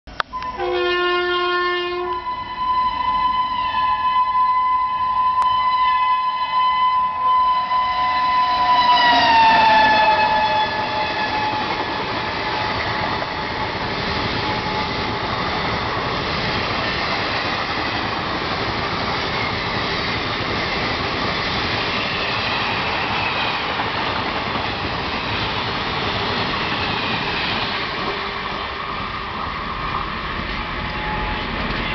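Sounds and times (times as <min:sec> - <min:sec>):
train coaches running past: 0:00.2 - 0:31.9
locomotive horn blast: 0:00.3 - 0:12.9, 0:30.9 - 0:31.9.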